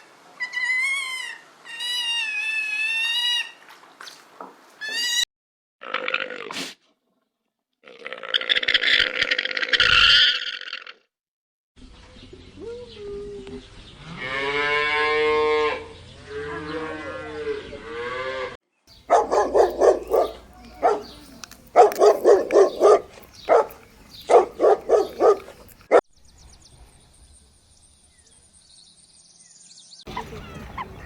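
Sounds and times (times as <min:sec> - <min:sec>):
cow mooing: 0:16.4 - 0:25.6
rapid repeated animal calls: 0:19.0 - 0:25.9.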